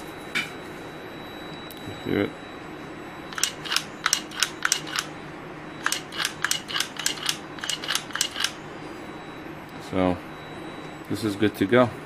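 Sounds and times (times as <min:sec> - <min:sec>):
sharp mechanical clicks: 0:03.3 - 0:05.1, 0:05.8 - 0:08.6.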